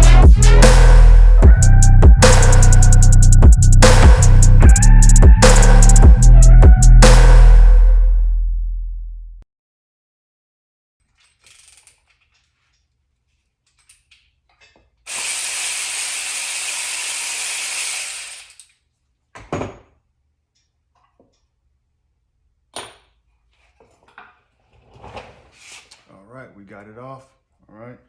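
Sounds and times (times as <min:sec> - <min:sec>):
cordless ratchet running: 0:15.1 - 0:18.6.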